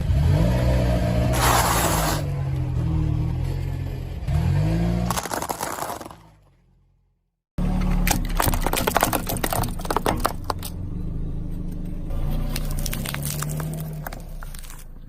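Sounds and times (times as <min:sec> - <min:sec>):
tyre crushing something crunchy: 0:05.1 - 0:06.3, 0:12.4 - 0:15.0.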